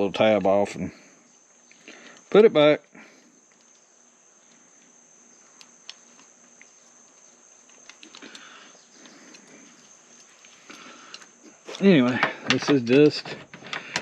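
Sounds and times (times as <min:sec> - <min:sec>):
soft rustle of parts: 0:03.3 - 0:14.0.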